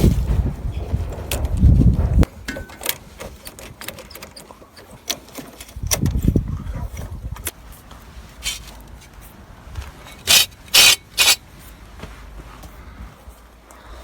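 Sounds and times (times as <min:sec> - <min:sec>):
wind rumbling on microphone: 0:00.0 - 0:03.9, 0:05.7 - 0:10.6
metal parts clicking and knocking: 0:02.4 - 0:06.4, 0:08.4 - 0:08.7, 0:10.0 - 0:11.4.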